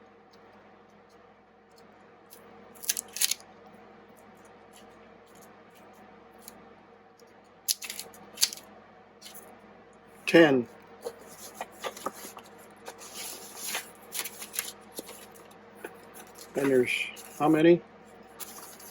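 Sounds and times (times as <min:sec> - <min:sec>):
faint steady hum: 0:00.0 - 0:18.9
handling clicks and rustles: 0:11.0 - 0:17.6.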